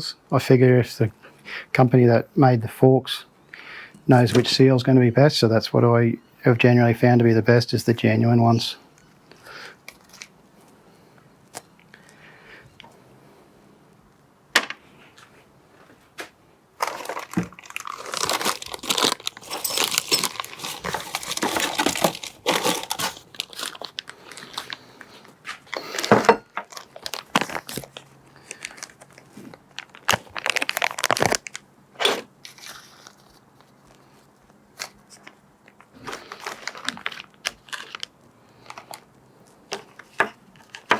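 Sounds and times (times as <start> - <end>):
packaging crinkling and tearing: 9.8 - 10.4, 16.8 - 40.9.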